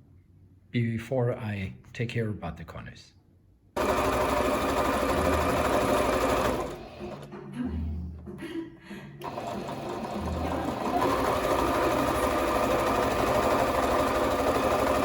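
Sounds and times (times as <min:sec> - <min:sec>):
electric sewing machine running: 0:03.8 - 0:07.3, 0:09.2 - 0:15.0.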